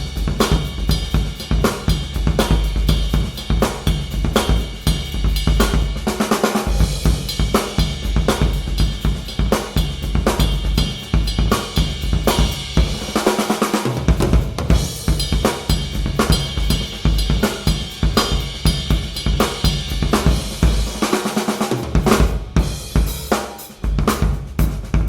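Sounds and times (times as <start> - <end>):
kick drum: 0.0 - 6.1, 23.9 - 25.0
hi-hats: 0.0 - 13.8, 14.7 - 21.6
cymbals: 0.0 - 25.0
snare drum: 0.0 - 25.0.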